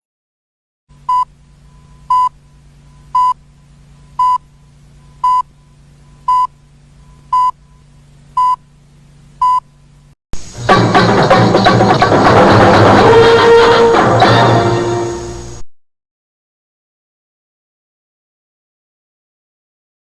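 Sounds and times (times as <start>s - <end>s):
steady low hum: 0.9s - 15.7s
short electronic beeps: 1.1s - 2.3s, 3.1s - 3.4s, 4.2s - 4.4s, 5.2s - 5.5s, 6.3s - 6.5s, 7.3s - 7.6s, 8.4s - 8.6s, 9.4s - 9.6s.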